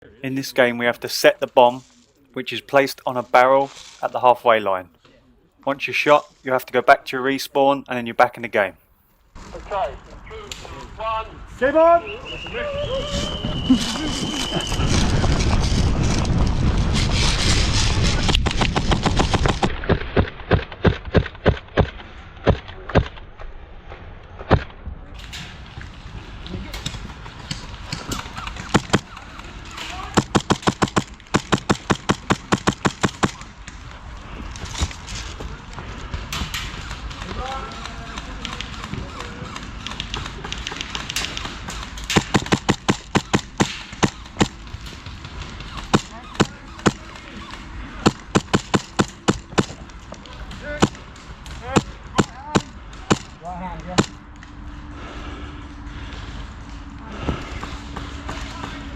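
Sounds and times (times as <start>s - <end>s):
rumbling wind noise: 12.5s - 21.1s
airsoft gun shots: 28.5s - 29.2s, 30.0s - 33.5s, 38.7s - 44.6s, 45.6s - 47.2s, 48.0s - 49.8s, 51.7s - 53.4s, 54.0s - 54.2s.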